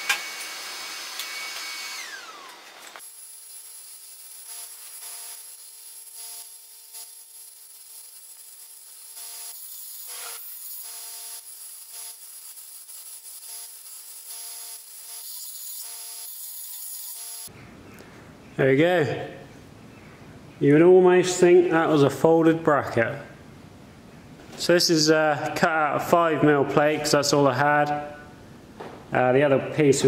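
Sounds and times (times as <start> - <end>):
power tool rasping against steel: 0.0 - 17.5.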